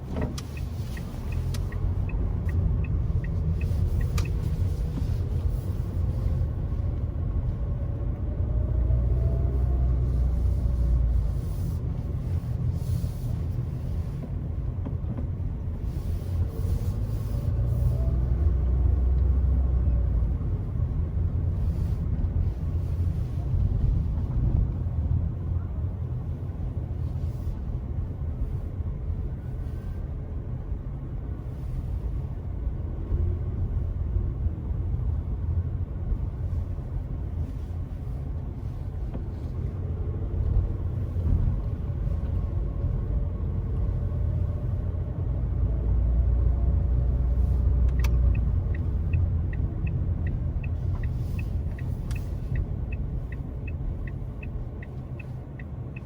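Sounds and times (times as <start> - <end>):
car driving: 0.0 - 56.0.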